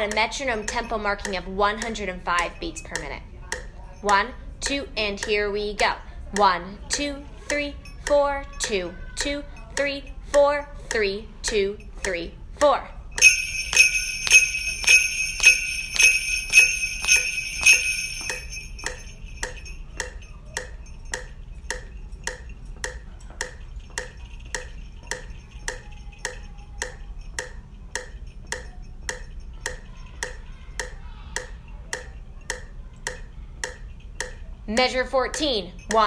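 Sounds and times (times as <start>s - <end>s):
metronome clicking: 0.0s - 5.4s, 13.2s - 34.4s
sleigh bells shaken: 13.2s - 21.1s, 23.6s - 27.3s.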